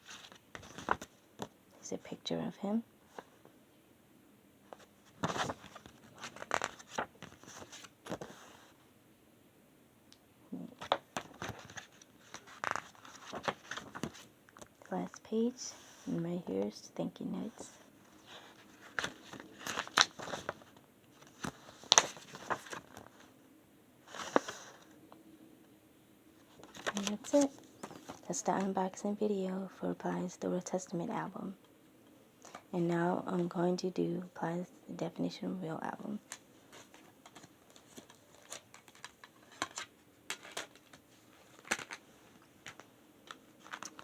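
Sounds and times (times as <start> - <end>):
paper rustling: 0.0 - 1.5, 4.7 - 8.8, 10.8 - 14.3, 17.5 - 23.3, 24.1 - 25.0, 26.4 - 28.7, 36.2 - 44.0.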